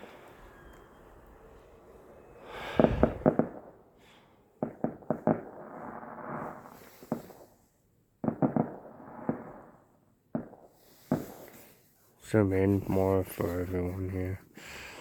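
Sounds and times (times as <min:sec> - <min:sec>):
echoing rumble: 0:00.0 - 0:06.7
fireworks bangs and cracks: 0:00.0 - 0:11.8.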